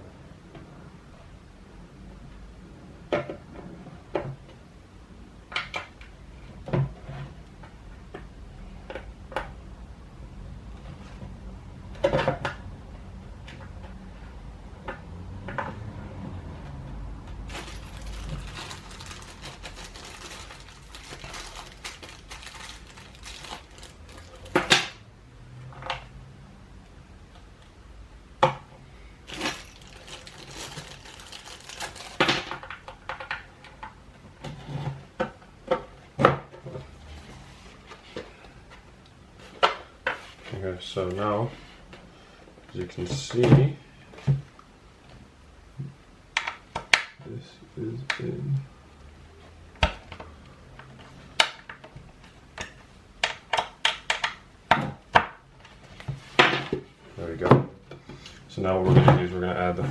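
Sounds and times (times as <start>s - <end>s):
scraping and rattling: 17.3s - 24.9s, 29.3s - 32.7s.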